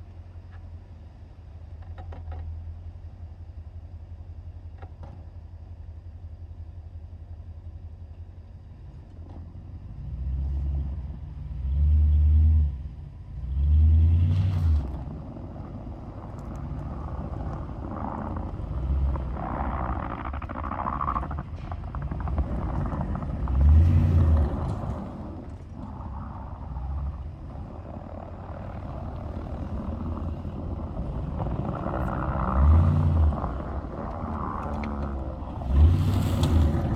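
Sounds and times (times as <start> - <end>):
pickup truck engine revving: 10.0 - 36.9.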